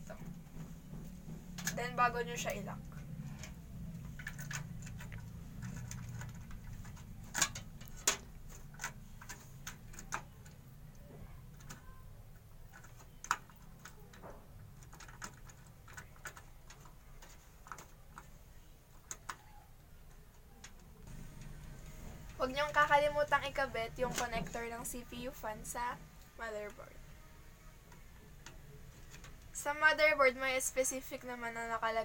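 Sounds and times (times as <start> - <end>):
steady low hum: 20.0 - 32.0.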